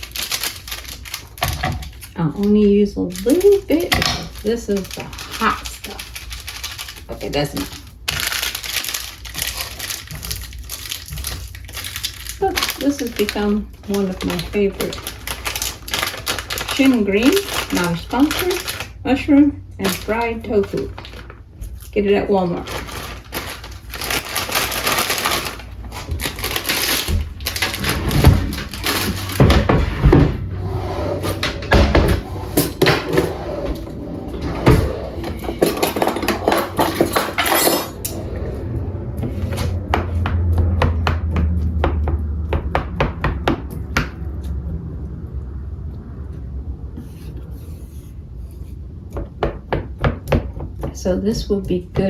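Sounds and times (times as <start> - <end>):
low hum: 11.6 - 49.2
dishes and utensils clinking: 34.7 - 38.2.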